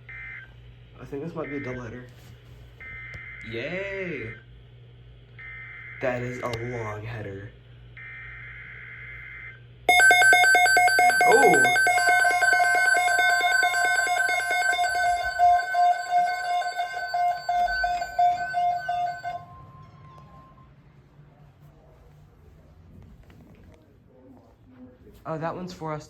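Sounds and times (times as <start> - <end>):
rapid pulsed alarm beeping: 9.9 - 19.5
faint steady tone: 9.9 - 20.6.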